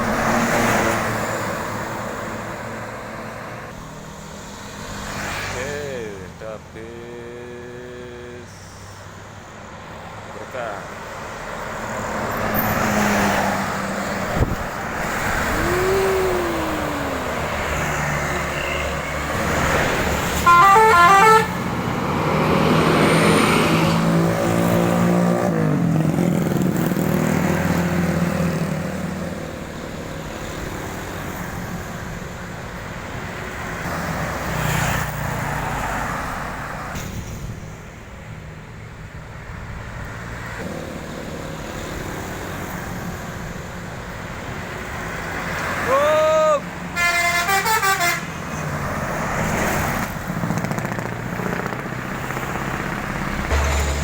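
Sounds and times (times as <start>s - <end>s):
traffic passing on highway: 0.0s - 54.0s
multi-tone bus horn: 18.3s - 19.6s, 20.3s - 21.7s, 46.9s - 48.6s
large vehicle engine passing: 21.4s - 32.3s, 48.6s - 54.0s.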